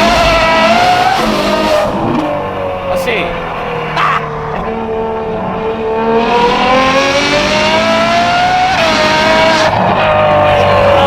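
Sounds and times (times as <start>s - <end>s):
sharp exhaust crack: 0.0s - 3.8s
car engine accelerating hard: 0.0s - 11.0s.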